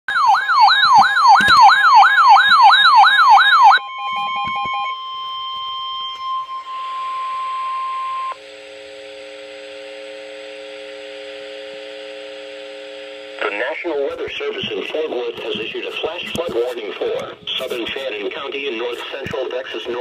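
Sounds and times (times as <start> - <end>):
electronic siren sweeping: 0.1 - 8.8.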